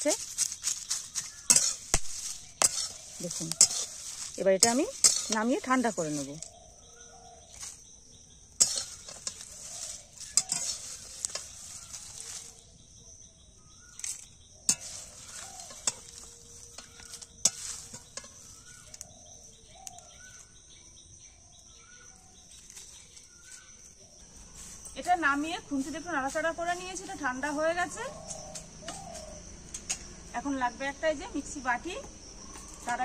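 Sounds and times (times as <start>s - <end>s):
dry spices rustling: 0.0s - 6.8s, 7.4s - 12.9s, 13.8s - 20.5s, 22.4s - 29.5s
metal spatula scraping a wok: 1.0s - 6.5s, 8.5s - 12.7s, 14.0s - 19.0s.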